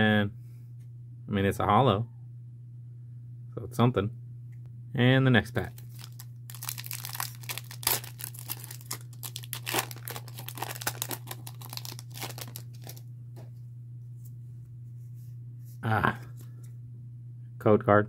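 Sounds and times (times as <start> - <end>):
steady low hum: 0.0 - 18.0
foil wrapper tearing and crinkling: 5.6 - 13.0.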